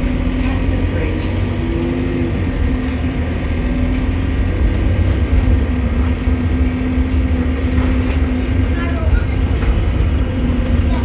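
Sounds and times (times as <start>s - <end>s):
bus engine rumble: 0.0s - 11.0s.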